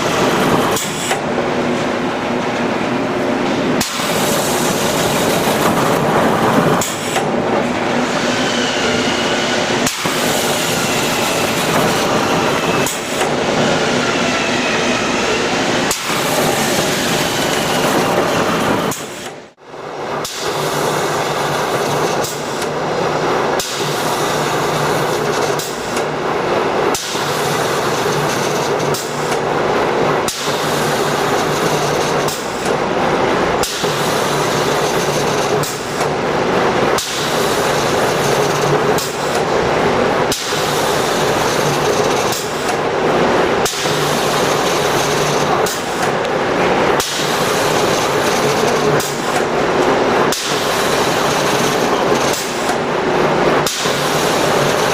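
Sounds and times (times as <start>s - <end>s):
machine humming: 0.0s - 54.9s
sharp machine knock: 8.2s - 15.2s, 15.8s - 19.4s, 43.6s - 46.2s, 47.0s - 49.5s, 50.3s - 52.8s, 53.6s - 54.9s.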